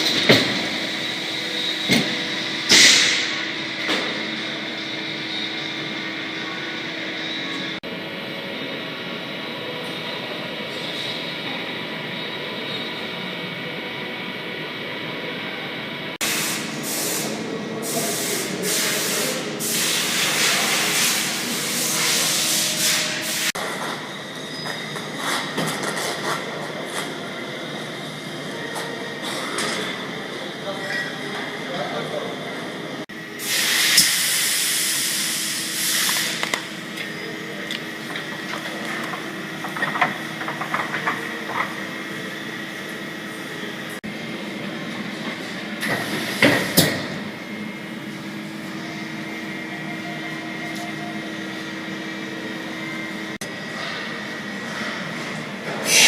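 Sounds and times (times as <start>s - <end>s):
steady machine hum: 0.0s - 20.0s, 26.6s - 56.0s
loud hissing spray: 16.2s - 23.5s, 33.4s - 36.4s.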